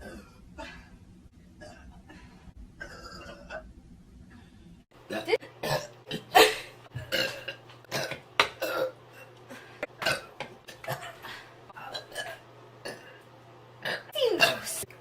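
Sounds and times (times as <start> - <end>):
woman burping: 0.0 - 0.4, 2.8 - 3.7, 5.0 - 9.0, 10.0 - 11.2.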